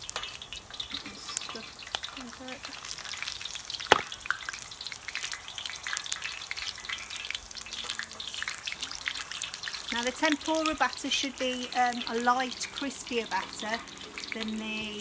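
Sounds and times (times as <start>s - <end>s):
leaves sizzling in hot oil: 0.0s - 15.0s
sharp crack: 3.2s - 7.4s.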